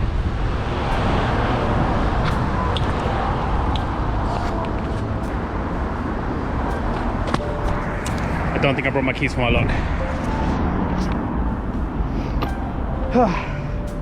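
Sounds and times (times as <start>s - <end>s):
road traffic rumble: 0.0s - 14.0s.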